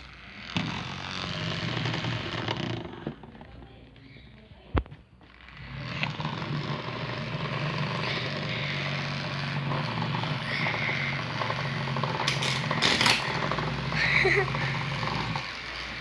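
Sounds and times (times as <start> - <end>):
small fan motor whirring: 0.0 - 4.6, 5.2 - 16.0.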